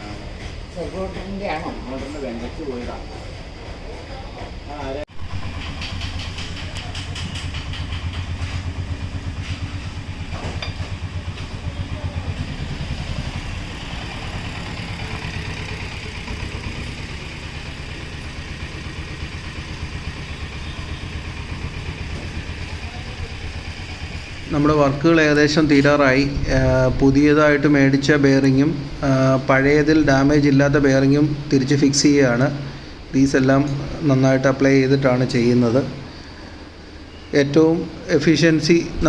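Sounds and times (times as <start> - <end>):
engine idling: 4.6 - 31.5.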